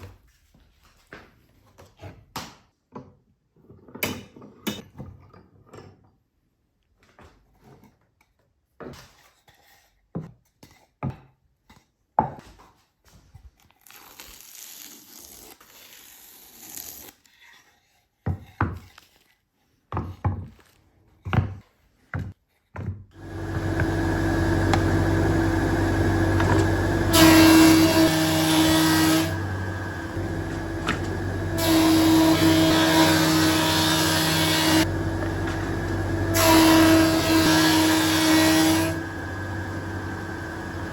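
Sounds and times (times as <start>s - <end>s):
wood and tools knocking: 22.2s - 40.8s
wood lathe motor hum: 23.2s - 40.9s.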